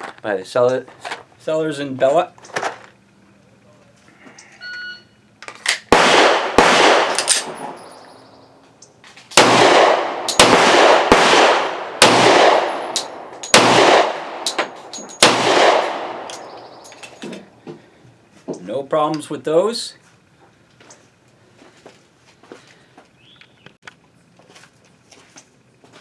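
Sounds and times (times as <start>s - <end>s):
pistol shots echoing: 5.9s - 8.0s, 9.4s - 16.9s.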